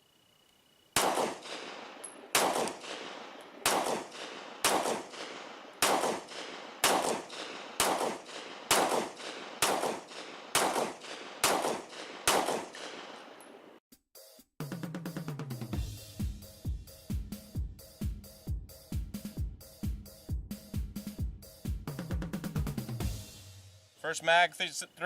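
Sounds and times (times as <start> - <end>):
pistol shots echoing: 1.0 - 13.8.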